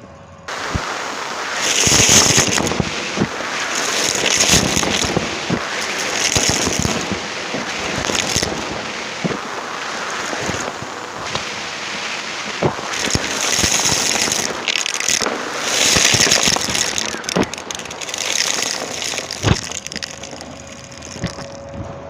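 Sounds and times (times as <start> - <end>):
vacuum cleaner sucking up debris: 0.5 - 21.7
grit crackling and rattling: 1.5 - 11.5, 12.6 - 21.8.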